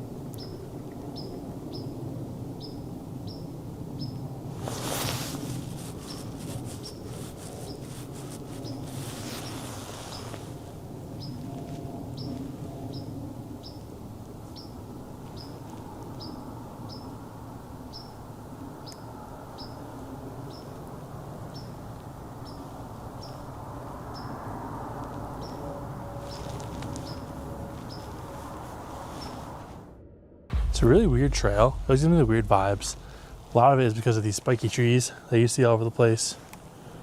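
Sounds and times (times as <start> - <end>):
low steady rumbling: 27.4 - 34.8.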